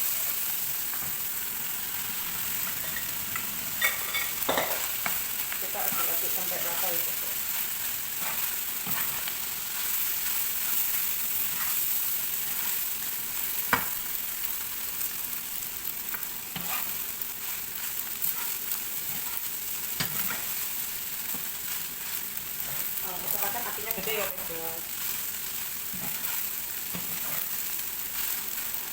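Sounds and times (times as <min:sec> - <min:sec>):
rice sizzling in a pan: 0:00.0 - 0:28.9.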